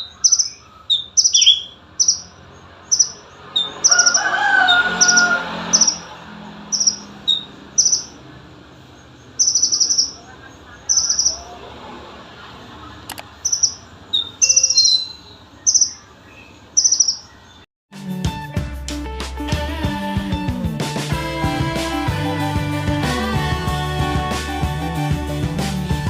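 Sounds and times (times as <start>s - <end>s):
bird trilled chirps: 0.0s - 6.1s, 6.7s - 8.2s, 8.8s - 11.5s, 13.4s - 17.6s.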